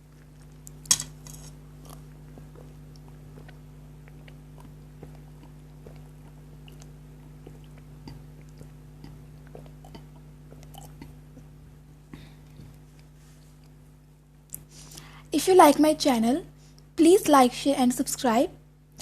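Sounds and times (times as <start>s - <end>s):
person chewing noodles: 0.0s - 0.9s, 1.5s - 11.6s
steady low hum: 0.0s - 19.0s.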